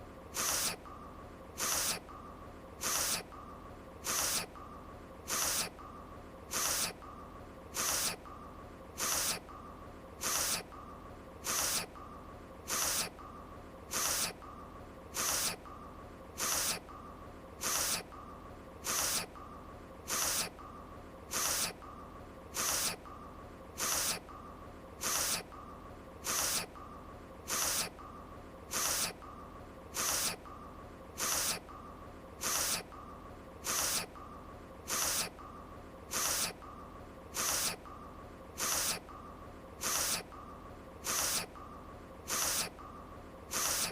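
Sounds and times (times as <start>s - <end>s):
faint steady background tone: 0.0s - 43.9s
cartoon character sniffle: 1.6s - 2.0s, 2.8s - 3.3s, 10.2s - 10.6s, 17.6s - 18.0s, 31.2s - 31.6s, 38.6s - 39.0s.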